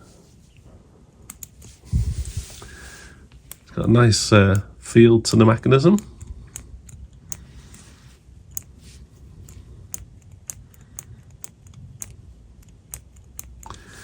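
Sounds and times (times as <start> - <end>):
soft handling rustle: 0.0 - 4.7, 7.3 - 9.8
mechanical pencil clicking: 1.3 - 1.6, 8.5 - 8.7, 9.4 - 14.0.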